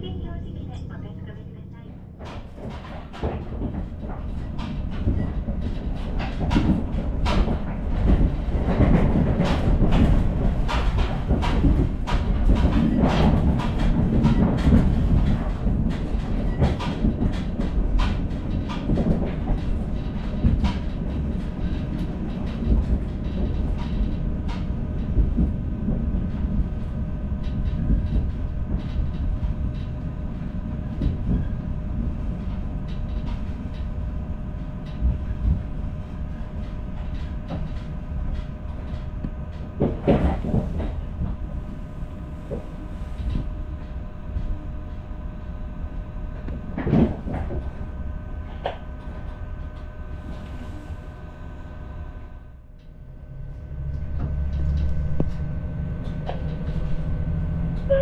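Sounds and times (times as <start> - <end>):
train rumbling on rails: 0.0 - 58.0
wheels clicking over rail joints: 2.0 - 45.0, 46.4 - 51.3, 52.8 - 58.0.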